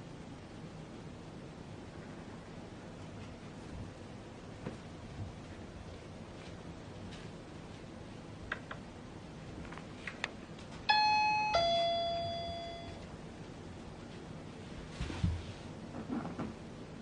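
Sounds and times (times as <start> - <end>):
two-note doorbell chime: 10.9 - 13.1.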